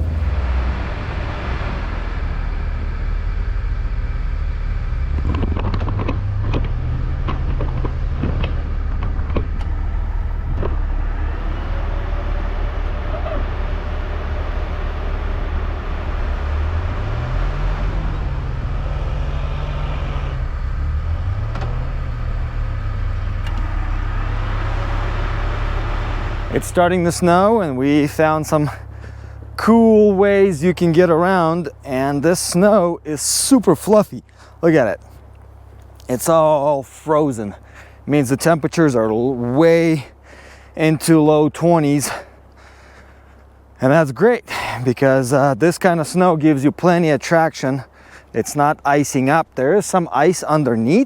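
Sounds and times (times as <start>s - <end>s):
jeep engine revving: 0.0s - 51.0s
sharp knocks and rattles: 5.0s - 10.9s.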